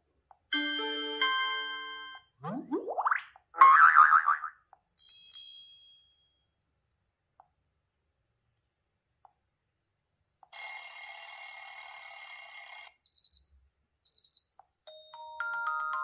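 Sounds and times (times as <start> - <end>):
bell-like telephone ring: 10.6 - 13.0, 14.9 - 16.0
chiming mallet-like notes: 14.9 - 16.0.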